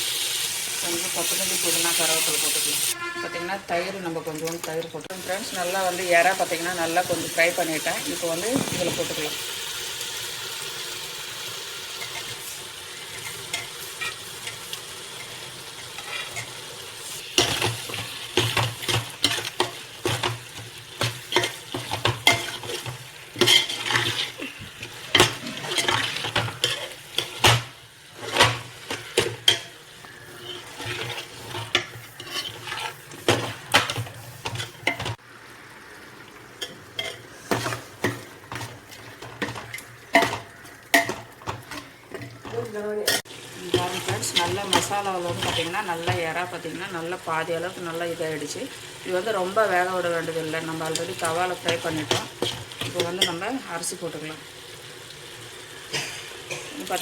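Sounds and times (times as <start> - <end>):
prawns sizzling in a pot: 0.0 - 57.0
spoon scraping and clicking against pot: 36.6 - 43.3.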